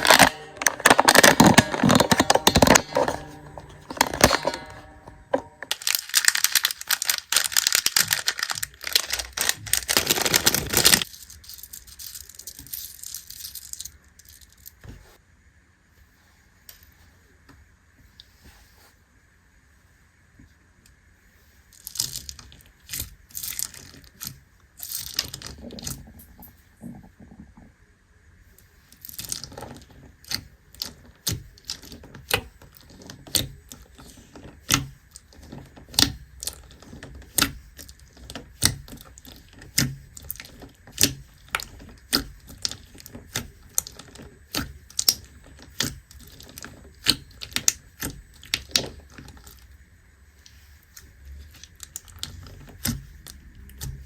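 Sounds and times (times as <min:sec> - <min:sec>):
slime squishing: 0:00.0 - 0:15.1, 0:28.9 - 0:49.8, 0:50.4 - 0:54.0.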